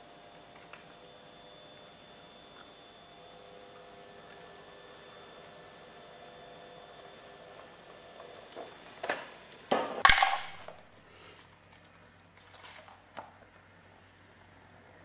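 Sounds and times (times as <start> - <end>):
hard objects knocking and clicking: 9.7 - 10.7.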